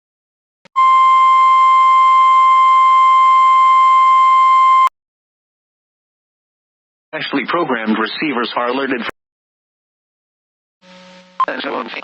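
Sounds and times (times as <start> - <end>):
steady high alarm tone: 0.8 - 4.9.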